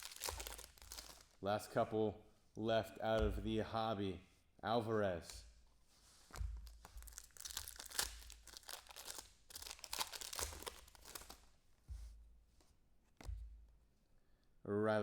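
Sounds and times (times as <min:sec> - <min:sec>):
foil wrapper crinkling: 0:00.0 - 0:01.4, 0:06.8 - 0:11.4
low thumps: 0:03.0 - 0:03.8.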